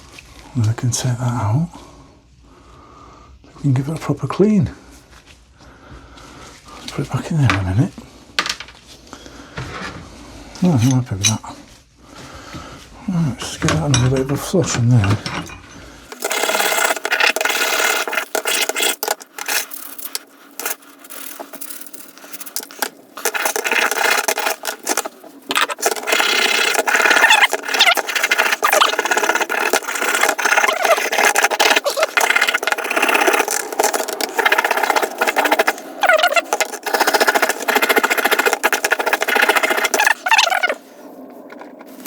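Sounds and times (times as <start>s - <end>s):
wire brush scratching metal: 13.6s - 40.8s.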